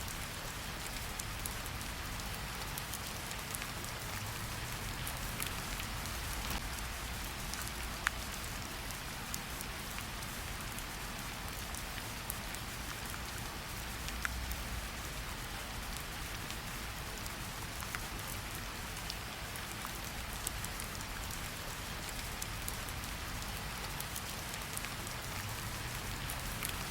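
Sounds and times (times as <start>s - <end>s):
steady rain: 0.0s - 26.9s
wood fire crackling: 0.1s - 10.9s.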